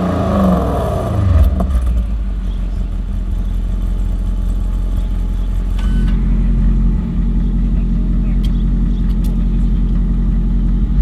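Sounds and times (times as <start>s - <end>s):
engine running at low revs: 0.0s - 11.0s
brief high beep: 5.8s - 6.2s.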